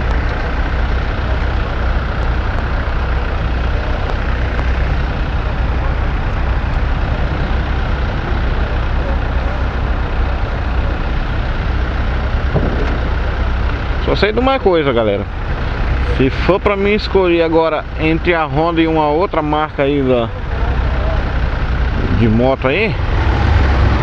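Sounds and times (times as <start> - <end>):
motorcycle engine running: 0.0 - 18.6
wind buffeting microphone: 12.3 - 14.4.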